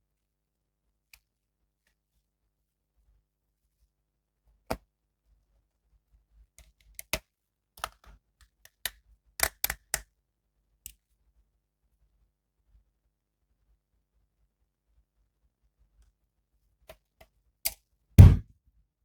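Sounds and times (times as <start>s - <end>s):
plastic clicks and snaps: 9.4s - 10.0s.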